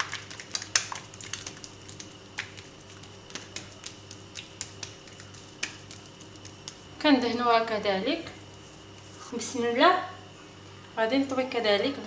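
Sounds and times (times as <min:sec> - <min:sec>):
hands working dough: 0:00.0 - 0:09.6
faint steady hum: 0:00.0 - 0:12.0.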